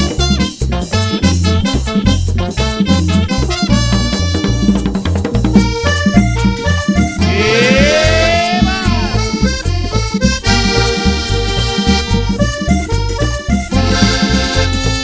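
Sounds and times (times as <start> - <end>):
bass and drum beat: 0.0 - 15.0
lead melody: 5.6 - 15.0.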